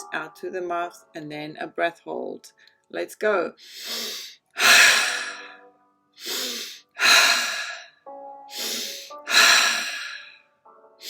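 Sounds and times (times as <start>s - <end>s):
soft background music: 0.0s - 11.0s
person sniffing in through nose: 3.6s - 5.5s, 6.2s - 7.9s, 8.5s - 10.3s
person blowing out through mouth: 3.7s - 5.5s, 6.2s - 7.9s, 8.5s - 10.3s.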